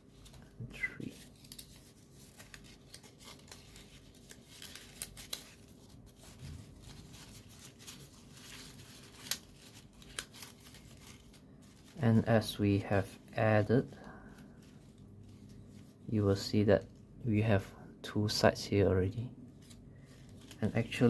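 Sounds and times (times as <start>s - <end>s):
paper clicks and scrapes: 0.0s - 12.0s
paper rustling: 0.0s - 17.0s, 19.5s - 21.0s.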